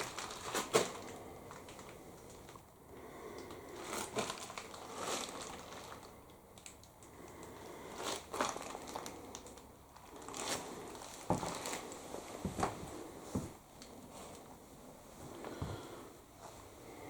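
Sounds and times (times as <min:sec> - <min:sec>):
crinkling and crunching: 0:00.0 - 0:16.7
footsteps through clutter: 0:10.0 - 0:14.6.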